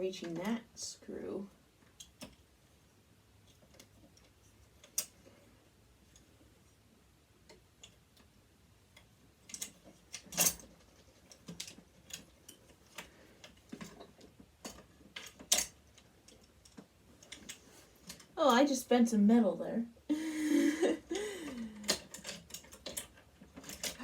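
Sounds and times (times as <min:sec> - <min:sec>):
hand tool clicking on metal parts: 0:09.0 - 0:18.4, 0:21.4 - 0:24.0.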